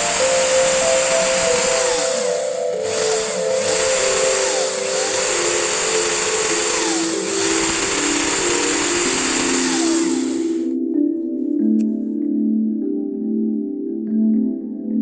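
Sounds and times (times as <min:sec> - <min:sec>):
motor whirring: 0:00.0 - 0:10.7
background music melody: 0:00.0 - 0:15.0.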